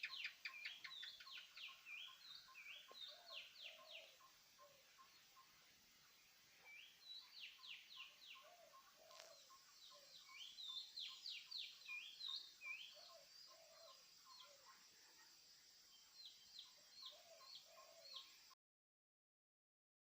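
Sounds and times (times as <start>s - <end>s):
faint birdsong chirps: 0.0s - 18.6s.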